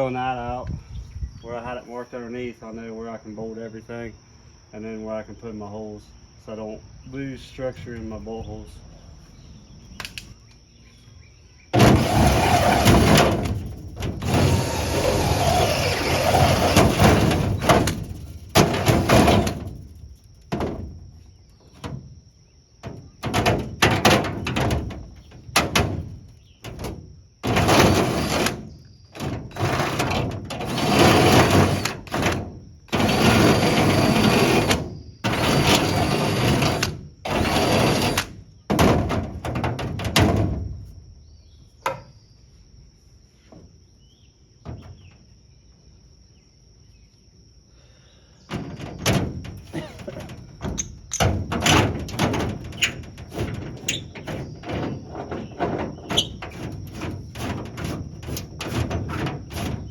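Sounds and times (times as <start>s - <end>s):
power drill drilling: 11.9s - 13.2s, 14.2s - 17.1s.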